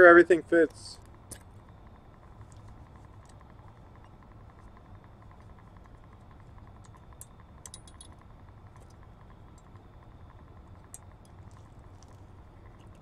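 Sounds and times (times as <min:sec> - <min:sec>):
low steady hum: 0:00.0 - 0:13.0
faint metallic clicks and clinks: 0:06.8 - 0:09.0.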